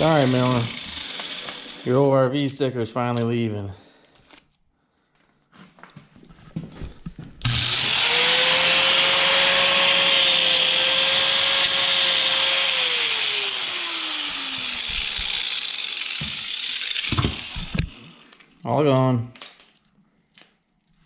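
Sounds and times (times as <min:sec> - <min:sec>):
power tool motor whine: 0:00.0 - 0:02.0, 0:07.4 - 0:18.5.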